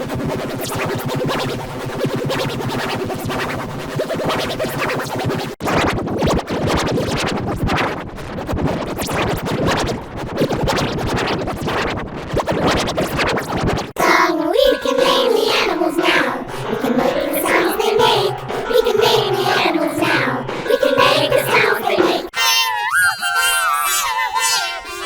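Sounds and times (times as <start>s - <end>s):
distorted remixed music: 14.0s - 22.3s.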